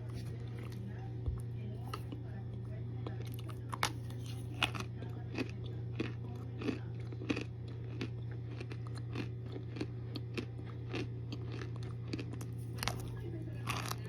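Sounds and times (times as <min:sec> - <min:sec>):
crisp chewing crunches: 0:03.0 - 0:14.0.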